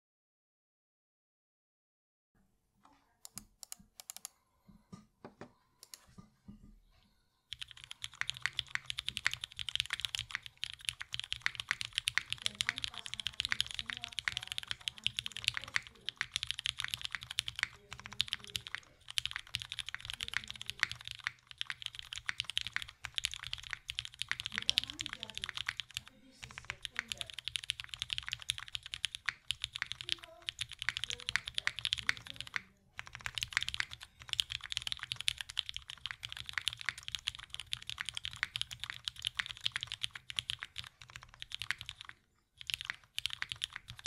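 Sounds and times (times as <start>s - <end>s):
typing on mechanical keyboard: 3.2s - 4.3s, 7.5s - 44.0s.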